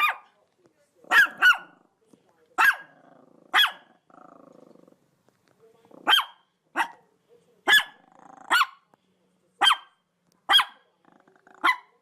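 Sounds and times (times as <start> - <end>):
dog barking: 0.0 - 0.4, 1.1 - 1.8, 2.6 - 4.0, 6.0 - 7.0, 7.6 - 8.9, 9.6 - 10.9, 11.5 - 12.0.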